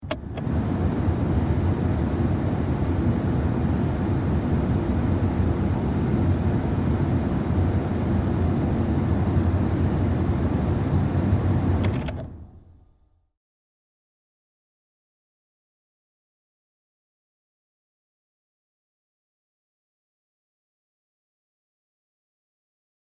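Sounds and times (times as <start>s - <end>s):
air blowing from car vents: 0.0s - 12.8s.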